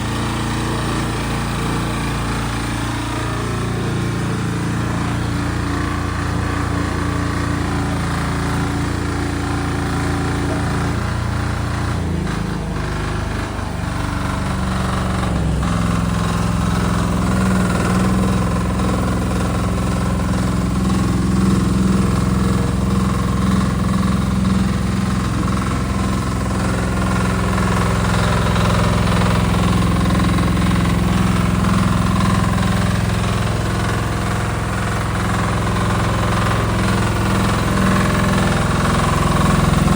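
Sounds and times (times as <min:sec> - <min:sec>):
excavator engine running: 0:00.0 - 0:39.9.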